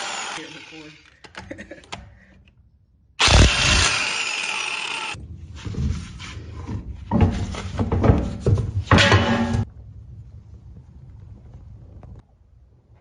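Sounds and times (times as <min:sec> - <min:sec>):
power tool running: 0:00.0 - 0:01.2, 0:03.2 - 0:05.2.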